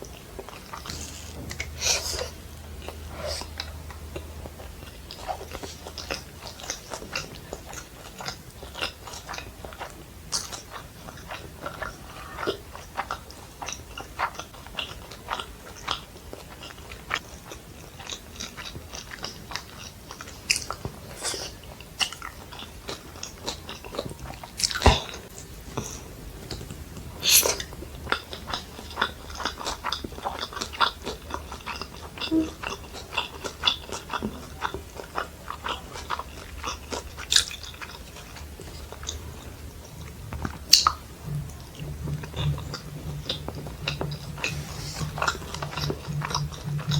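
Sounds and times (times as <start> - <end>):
person chewing food: 0.0 - 46.9.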